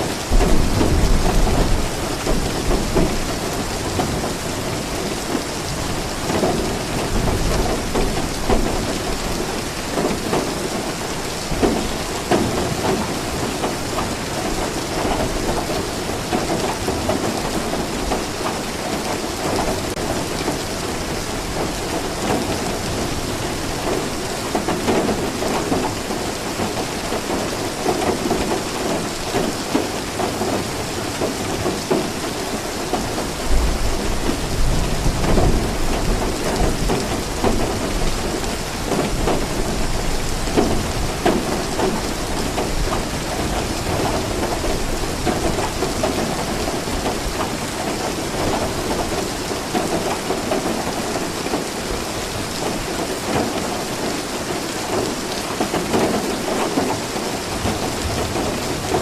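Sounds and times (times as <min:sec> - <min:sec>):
heavy rain: 0:00.0 - 0:59.0
thunder rumbling: 0:00.3 - 0:10.7.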